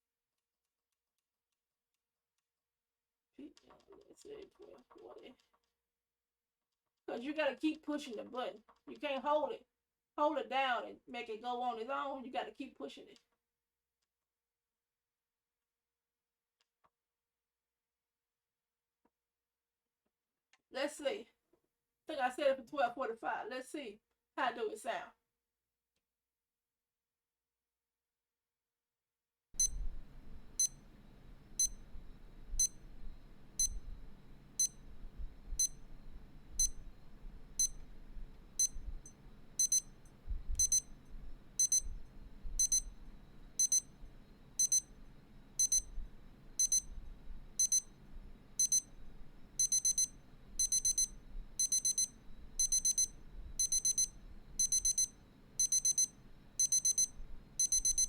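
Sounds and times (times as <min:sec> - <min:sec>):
alarm clock beeping: 0:29.6 - 0:29.8, 0:31.6 - 0:31.8, 0:32.6 - 0:32.8, 0:33.6 - 0:33.8, 0:34.6 - 0:34.8, 0:35.6 - 0:35.8, 0:36.6 - 0:36.8, 0:37.6 - 0:37.8, 0:38.6 - 0:38.8, 0:39.6 - 0:40.0, 0:40.6 - 0:40.9, 0:41.6 - 0:41.9, 0:42.6 - 0:43.0, 0:43.6 - 0:44.0, 0:44.6 - 0:45.0, 0:45.6 - 0:46.0, 0:46.6 - 0:46.9, 0:47.6 - 0:47.9, 0:48.6 - 0:48.9, 0:49.6 - 0:58.0.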